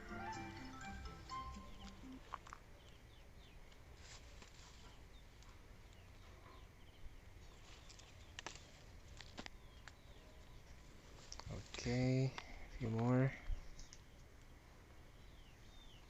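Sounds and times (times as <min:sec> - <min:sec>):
grass rustling: 0:03.8 - 0:06.1, 0:07.3 - 0:10.1
faint bird chirps: 0:04.2 - 0:08.8
grass stems snapping: 0:07.7 - 0:10.0.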